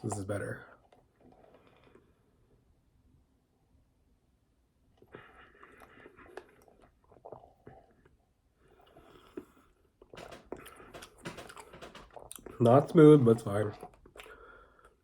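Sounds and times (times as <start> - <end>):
soft wet chewing: 0.0 - 2.8, 4.8 - 15.0
person drinking: 5.0 - 15.0.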